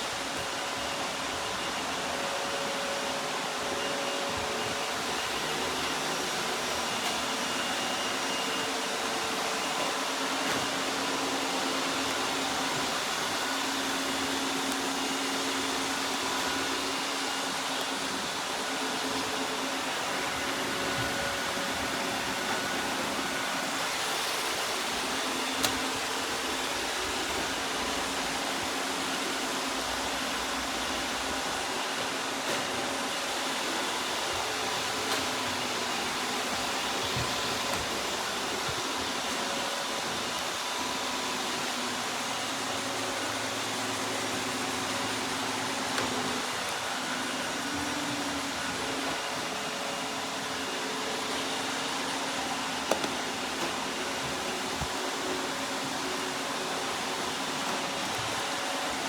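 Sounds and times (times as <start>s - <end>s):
robot vacuum whirring: 0.1s - 59.0s.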